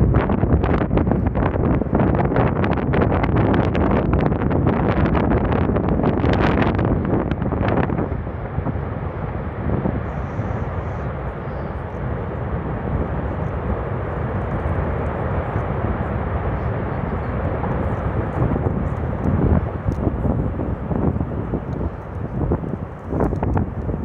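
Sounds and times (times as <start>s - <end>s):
lava fountain roaring: 0.0s - 24.0s
wind buffeting microphone: 0.0s - 24.0s.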